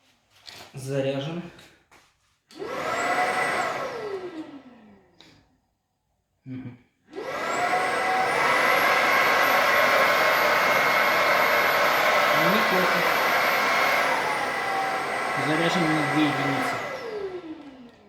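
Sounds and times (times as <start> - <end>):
stick vacuum motor whining: 2.5 - 5.3, 7.1 - 18.0.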